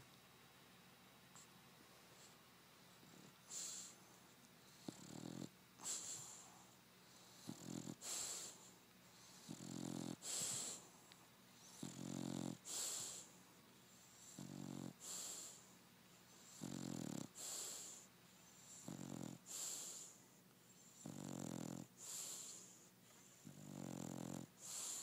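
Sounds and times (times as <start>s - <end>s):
dog snoring: 3.0s - 4.0s, 4.7s - 10.9s, 11.6s - 13.3s, 14.2s - 15.7s, 16.4s - 25.0s.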